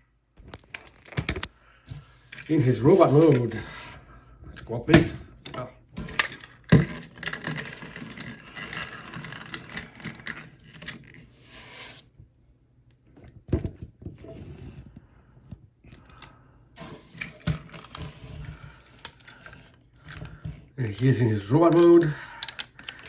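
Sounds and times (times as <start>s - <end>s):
plastic parts clicking and rattling: 0.4s - 1.5s, 4.5s - 11.3s, 15.9s - 23.0s.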